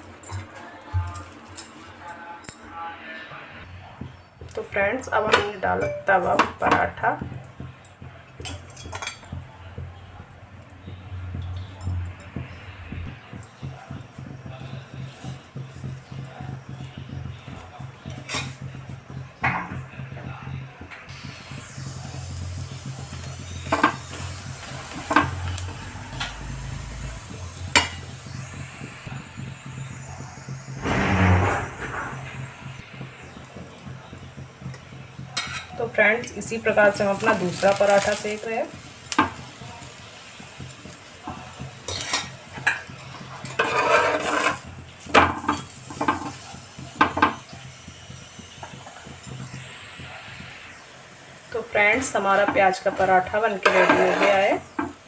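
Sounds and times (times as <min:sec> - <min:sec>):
flatbread sizzling on a griddle: 0:03.8 - 0:55.0
utensil knocking on griddle: 0:04.0 - 0:12.6, 0:13.2 - 0:20.4, 0:22.9 - 0:27.0, 0:33.2 - 0:49.6.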